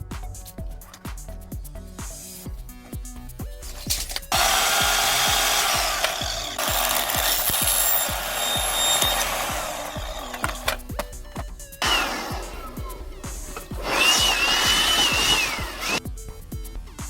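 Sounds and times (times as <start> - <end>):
background music with steady beat: 0.0 - 17.0
power tool cutting: 3.9 - 11.0, 11.8 - 16.0.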